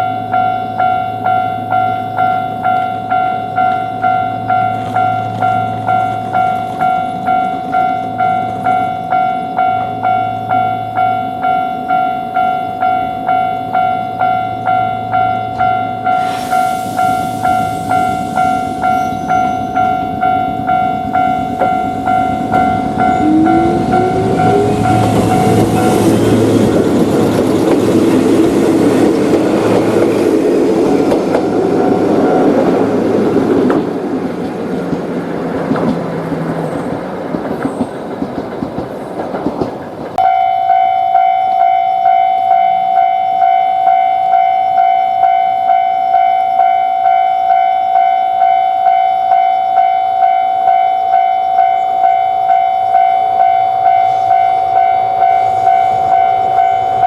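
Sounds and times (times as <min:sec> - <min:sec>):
level crossing alarm bell: 0:00.0 - 0:29.1, 0:40.2 - 0:57.0
level crossing alarm ringing: 0:00.0 - 0:33.0, 0:40.2 - 0:57.0
train wheels running over rails: 0:11.6 - 0:40.6
train motor whine: 0:16.1 - 0:38.0, 0:52.6 - 0:57.0.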